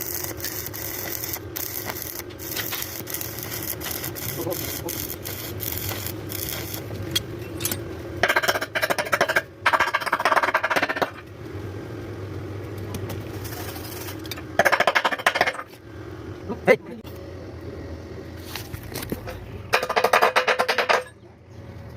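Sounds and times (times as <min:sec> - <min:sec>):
welding arc crackling: 0:00.0 - 0:11.3, 0:12.0 - 0:15.8
steady low hum: 0:00.0 - 0:21.9.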